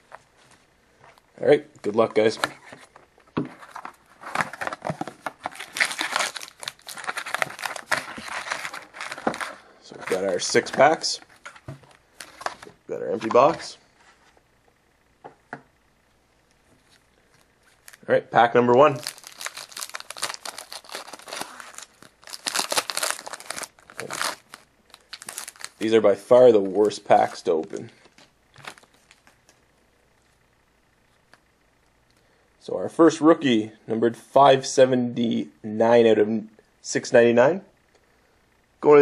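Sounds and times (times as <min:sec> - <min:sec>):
plastic wrapping crinkling: 0:03.7 - 0:10.6, 0:18.9 - 0:26.0, 0:26.8 - 0:29.6.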